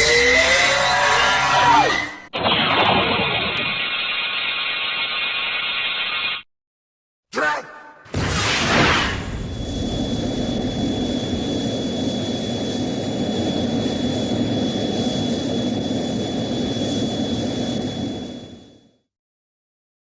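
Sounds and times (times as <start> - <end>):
thin high whine: 8.9 - 19.0.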